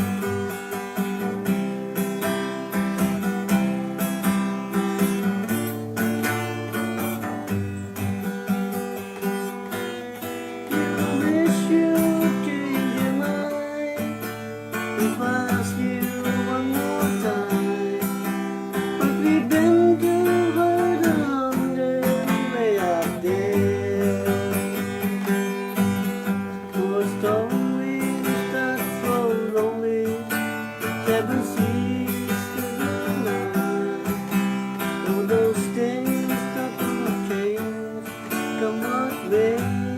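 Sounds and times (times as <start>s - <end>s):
acoustic guitar strumming: 0.0s - 39.9s.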